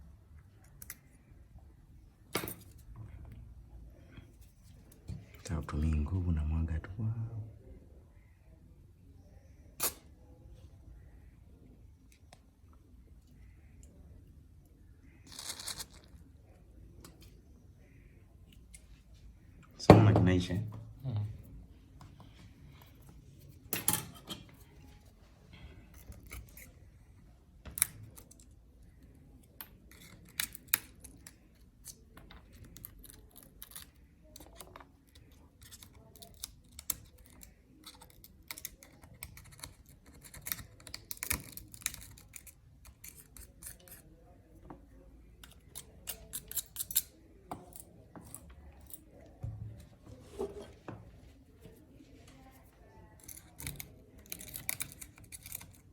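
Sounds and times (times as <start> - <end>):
hand tool clicking and scraping glass: 53.2 - 55.9.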